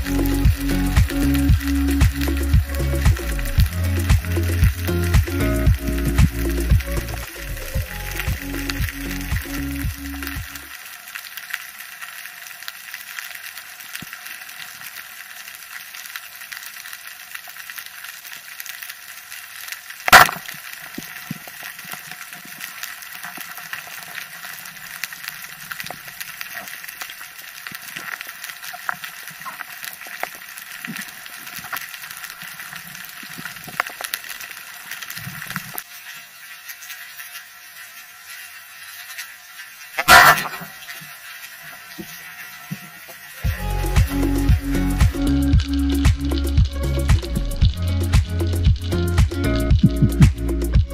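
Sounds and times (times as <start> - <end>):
underwater crackling: 0.0 - 50.9
small clicks: 8.2 - 43.3
speargun firing crack: 20.1 - 20.4, 40.0 - 40.6.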